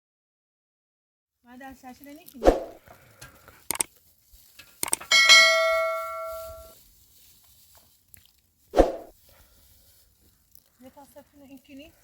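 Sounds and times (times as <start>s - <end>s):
sharp clicks: 3.7s - 3.9s, 4.8s - 5.1s
struck metallic ring: 5.0s - 6.7s.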